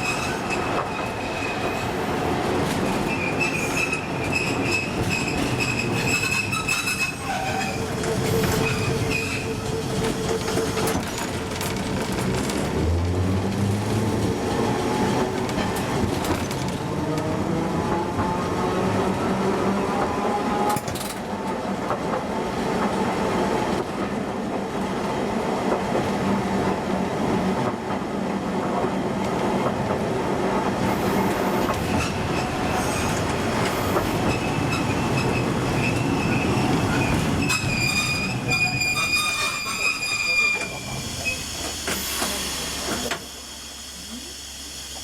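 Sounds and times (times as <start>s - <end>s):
high wheel squeal: 3.1s - 10.9s, 34.2s - 41.7s
wheel-on-rail rumble: 4.3s - 18.3s.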